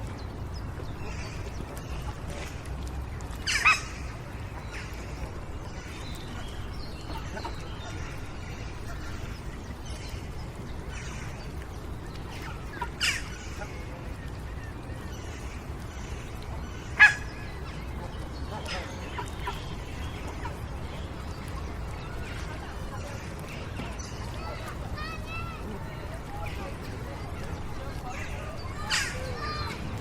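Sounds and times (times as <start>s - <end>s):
birds singing: 0.0s - 30.0s
children playing in distance: 10.9s - 30.0s.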